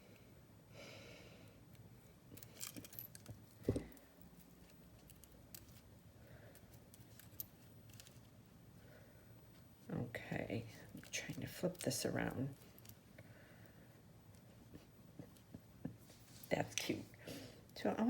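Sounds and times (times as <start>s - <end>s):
beads and jewelry clinking: 2.3s - 5.8s.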